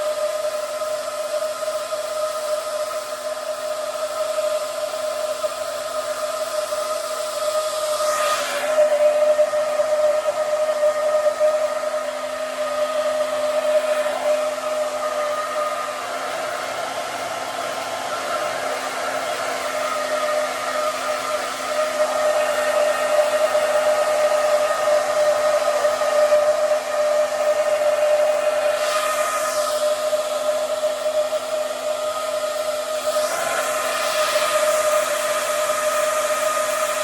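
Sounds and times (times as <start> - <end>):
hair dryer blowing: 0.0 - 37.0.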